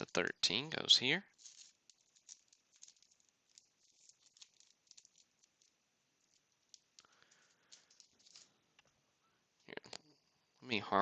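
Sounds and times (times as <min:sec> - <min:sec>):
trading cards ticking and rustling: 0:01.3 - 0:08.5.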